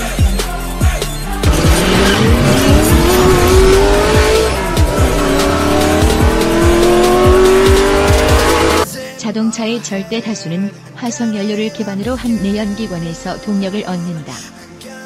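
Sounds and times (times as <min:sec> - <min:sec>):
music with drum beat: 0:00.0 - 0:08.8
car engine accelerating: 0:01.3 - 0:08.8.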